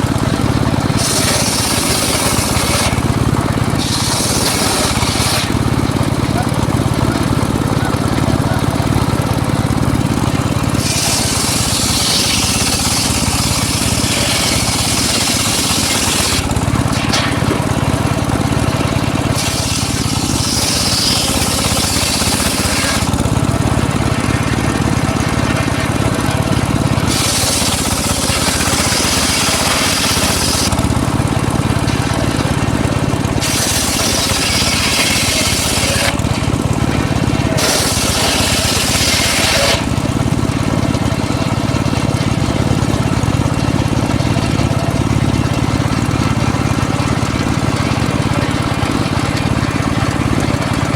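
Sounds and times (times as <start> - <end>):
saw blade cutting wood: 0.0 - 6.6, 10.4 - 41.1
circular saw motor running: 0.0 - 50.9.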